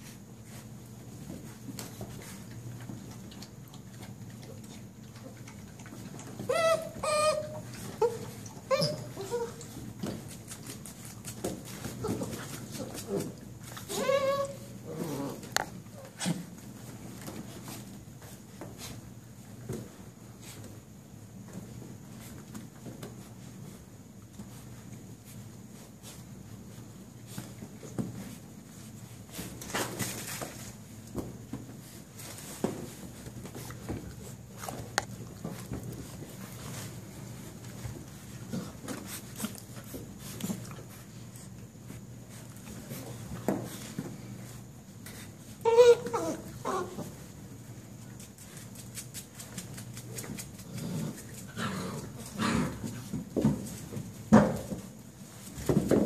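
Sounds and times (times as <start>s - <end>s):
puppies scuffling: 0.0s - 56.0s
puppies growling and yipping: 5.3s - 9.7s, 11.9s - 16.5s, 45.6s - 47.2s, 50.6s - 53.0s
puppy yips: 6.4s - 9.6s, 13.9s - 14.7s, 45.6s - 47.0s.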